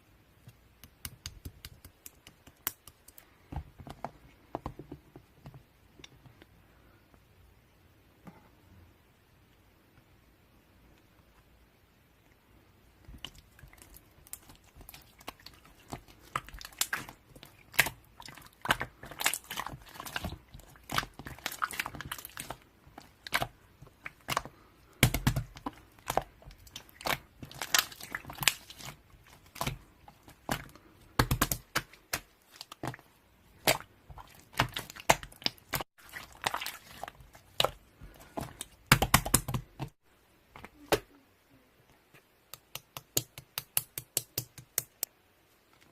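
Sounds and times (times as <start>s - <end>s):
crinkling and crackling with clicks: 13.1s - 40.0s.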